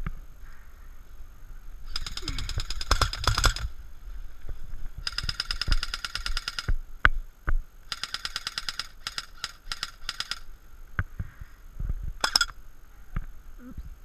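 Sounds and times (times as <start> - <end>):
airsoft gun firing full auto: 1.9 - 3.7, 5.0 - 6.7, 7.9 - 10.5, 12.2 - 12.5.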